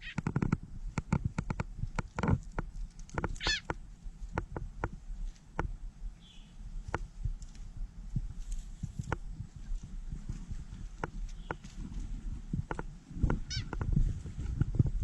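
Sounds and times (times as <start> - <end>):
sharp clicks and knocks: 0.1 - 5.0
bird crying out: 3.4 - 3.7, 13.5 - 13.7.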